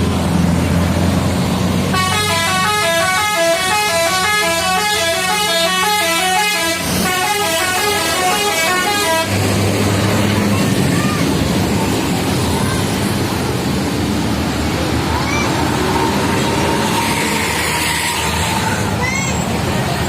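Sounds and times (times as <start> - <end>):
bus engine hum: 0.0 - 20.0
multi-tone bus horn tune: 1.9 - 9.8.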